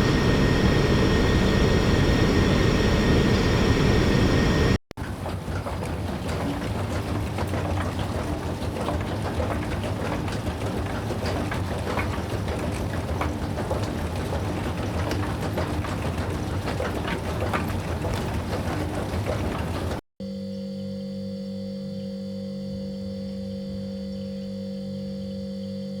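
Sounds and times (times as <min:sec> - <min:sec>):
machinery humming: 0:00.0 - 0:04.8.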